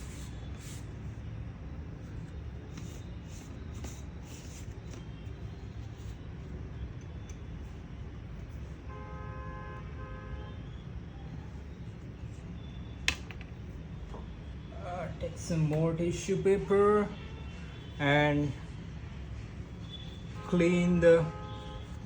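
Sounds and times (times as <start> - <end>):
vehicle horn toot: 8.8 - 10.7, 17.0 - 18.6, 19.8 - 22.0
distant traffic rumble: 10.6 - 22.0.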